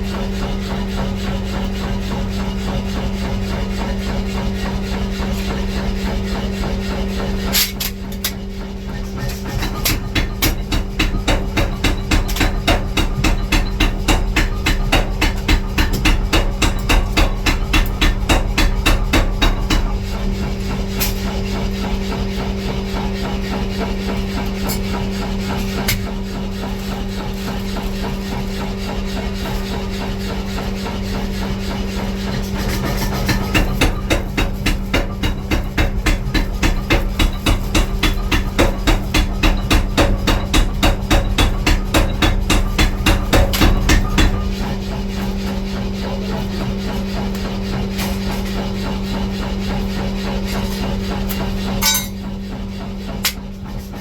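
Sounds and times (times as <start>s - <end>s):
hammering on steel: 1.0s - 20.2s, 32.6s - 47.7s, 50.6s - 54.0s.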